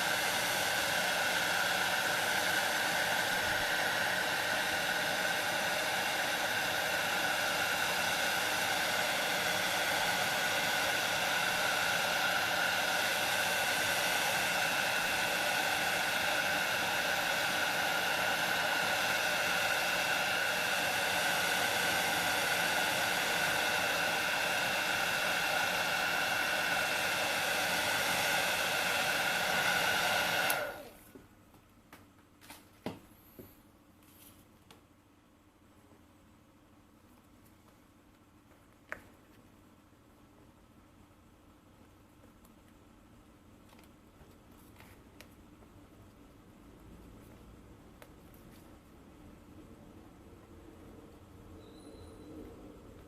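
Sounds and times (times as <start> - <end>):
hot-air blower whining: 0.0 - 31.2.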